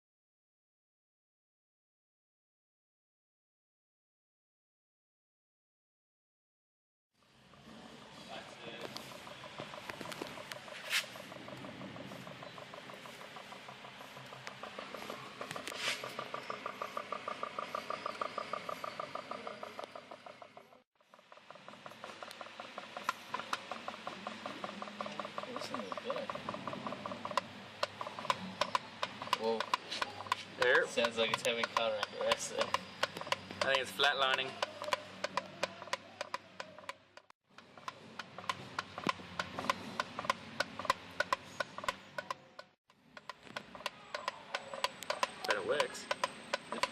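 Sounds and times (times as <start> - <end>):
steam boat popping: 8.8 - 37.0.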